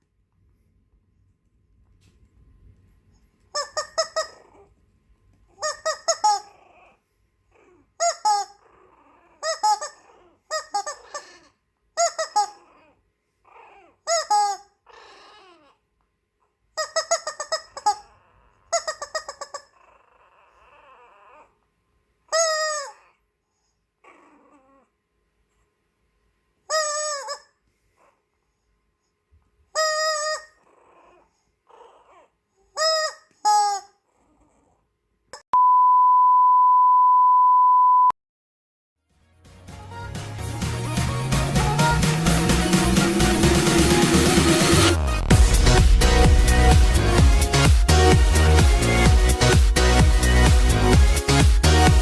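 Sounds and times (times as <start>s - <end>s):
squeaky toy squeaks: 3.5s - 4.7s, 5.5s - 7.0s, 7.6s - 15.7s, 16.7s - 21.4s, 22.3s - 23.1s, 26.7s - 27.6s, 29.7s - 31.2s, 31.8s - 34.0s
puppy growling: 4.2s - 4.8s, 5.5s - 11.6s, 12.4s - 14.0s, 14.8s - 15.8s, 17.7s - 21.6s, 24.0s - 25.0s, 30.2s - 32.8s, 34.0s - 34.9s.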